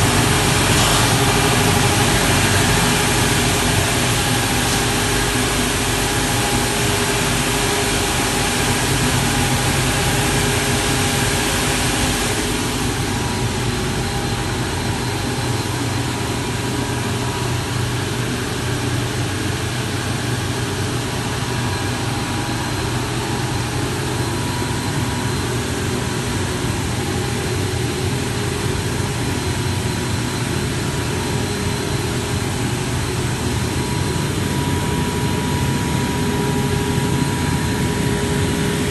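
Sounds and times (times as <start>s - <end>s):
grinding machine hum and hiss: 0.0s - 38.9s.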